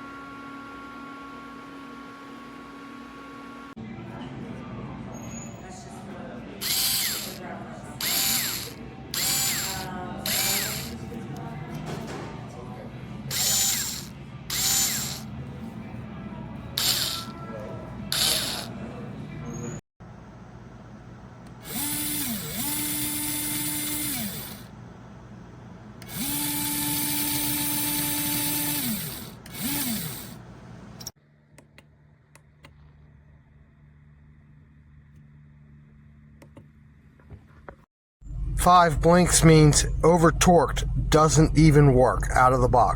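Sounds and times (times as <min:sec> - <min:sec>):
cordless screwdriver whirring: 0:06.6 - 0:07.4, 0:08.0 - 0:11.1, 0:13.3 - 0:15.3, 0:16.8 - 0:17.4, 0:18.1 - 0:18.7, 0:21.6 - 0:24.7, 0:26.0 - 0:30.4.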